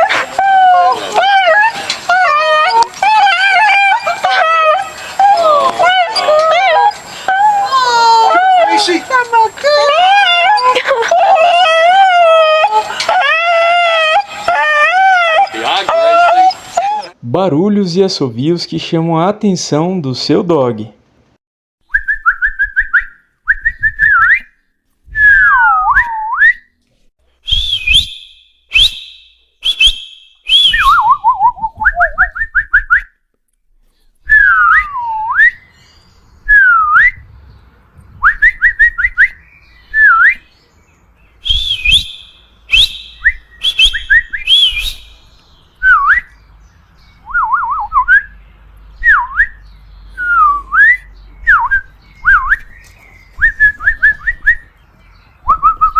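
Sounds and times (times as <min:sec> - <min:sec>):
person whistling for a dog: 0:21.9 - 0:24.5, 0:25.1 - 0:26.7, 0:27.4 - 0:33.1, 0:34.2 - 0:35.6, 0:36.5 - 0:37.2, 0:41.4 - 0:45.0, 0:50.2 - 0:52.7, 0:53.4 - 0:54.7, 0:55.5 - 0:55.9.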